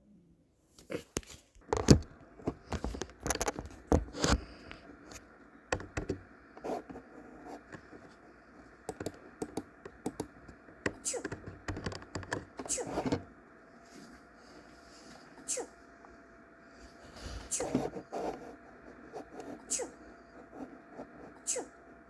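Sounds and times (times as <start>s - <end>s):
faint steady hum: 0.0s - 22.0s
clicks taps and knocks: 1.6s - 6.3s, 8.8s - 13.3s.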